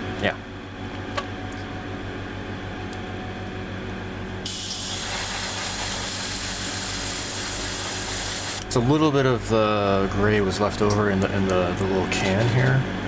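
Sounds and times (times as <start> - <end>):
airbrush spraying hiss: 4.5 - 8.6.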